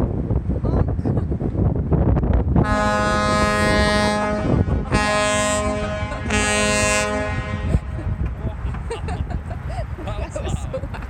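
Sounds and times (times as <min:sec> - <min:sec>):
wind rumbling on microphone: 0:00.0 - 0:11.0
ship's horn blasts: 0:02.6 - 0:08.4.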